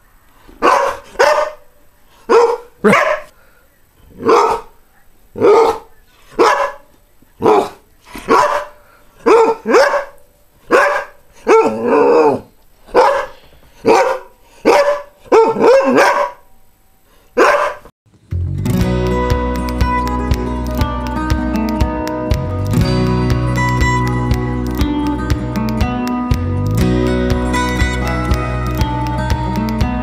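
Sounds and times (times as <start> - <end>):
dog barking: 0.6 - 1.7, 2.3 - 3.4, 4.1 - 16.5, 17.4 - 17.9.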